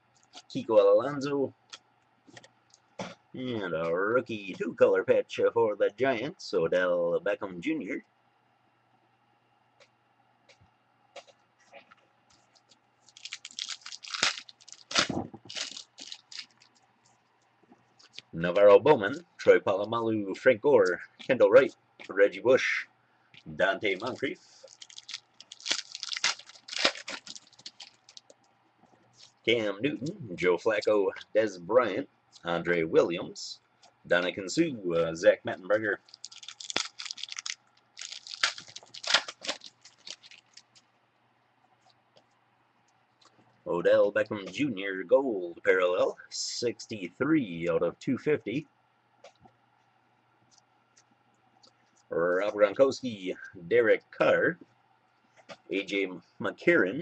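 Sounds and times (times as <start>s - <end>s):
trading cards rustling: 12.4s - 17.2s, 23.8s - 28.4s, 35.9s - 40.9s
wrapper crinkling and tearing: 13.0s - 16.8s, 23.9s - 28.4s, 36.0s - 40.8s.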